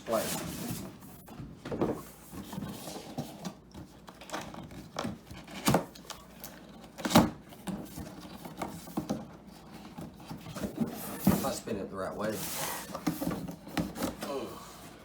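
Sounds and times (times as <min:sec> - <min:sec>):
cardboard rustling and scraping: 0:00.0 - 0:06.0, 0:06.6 - 0:15.0.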